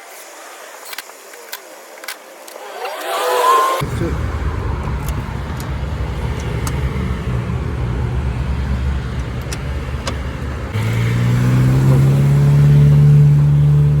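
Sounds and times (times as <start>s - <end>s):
vehicle engine running and revving: 3.8s - 14.0s
sharp clicks: 4.7s - 7.5s, 8.6s - 10.8s.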